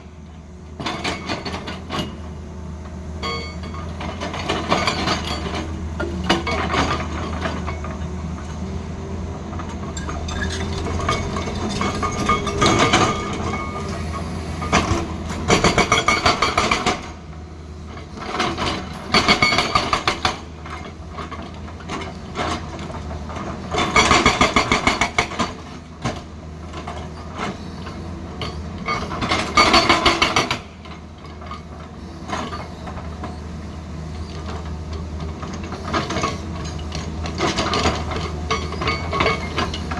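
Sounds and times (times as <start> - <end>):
excavator engine drone: 0.0 - 39.9.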